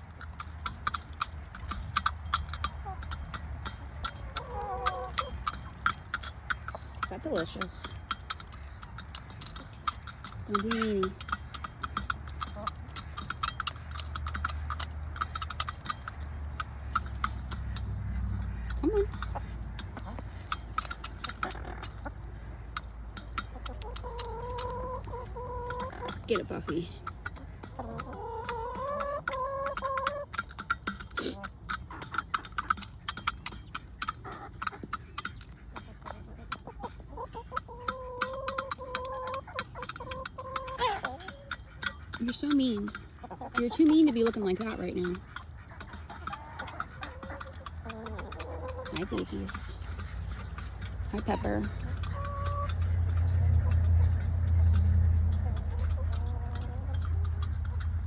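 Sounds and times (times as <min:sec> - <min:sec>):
chickens pecking clicks: 0:00.0 - 0:58.0.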